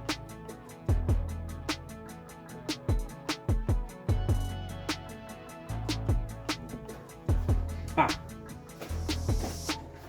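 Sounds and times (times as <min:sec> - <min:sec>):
hi-hat ticks: 0:00.0 - 0:10.0
music with drum beat: 0:00.0 - 0:10.0
kick drums: 0:00.9 - 0:01.4, 0:02.8 - 0:04.7, 0:05.9 - 0:06.7, 0:07.3 - 0:08.2, 0:08.9 - 0:09.9.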